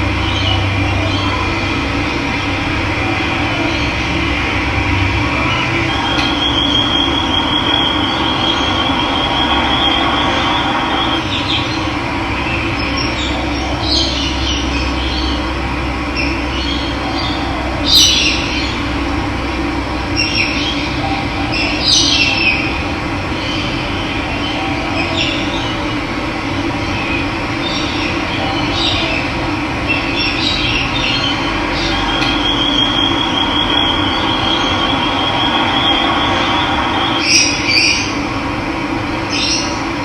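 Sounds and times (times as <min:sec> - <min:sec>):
birds chirping: 0:00.2 - 0:15.5, 0:26.7 - 0:38.2.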